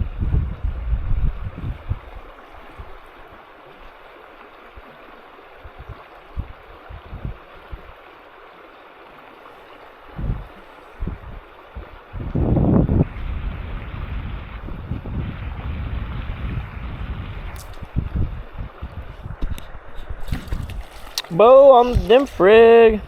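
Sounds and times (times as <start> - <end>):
low rumbles on microphone: 0.0 - 3.0, 10.1 - 21.0
creek water rushing: 1.3 - 14.7, 16.8 - 23.0.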